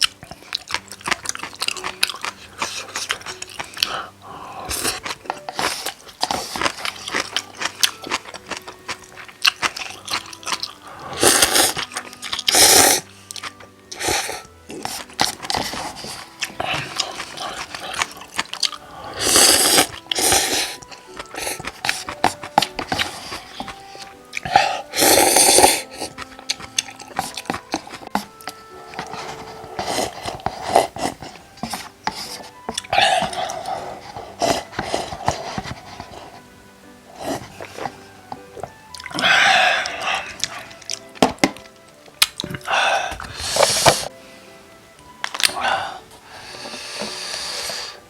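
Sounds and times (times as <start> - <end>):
chopsticks clicking: 0.0 - 4.1, 25.2 - 29.1, 39.8 - 44.1
noodle slurp: 0.0 - 36.5, 37.1 - 41.6, 42.3 - 44.1
chewing: 0.0 - 44.1, 45.0 - 48.0
faint background music: 0.0 - 48.0.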